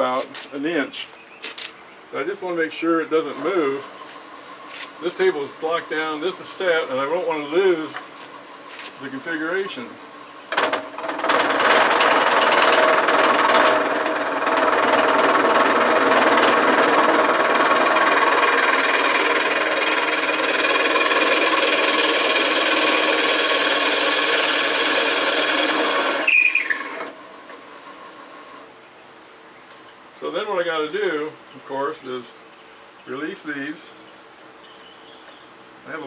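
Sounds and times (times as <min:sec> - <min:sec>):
machine winding down whine: 0:03.2 - 0:28.7
drill press boring into wood: 0:03.4 - 0:28.6.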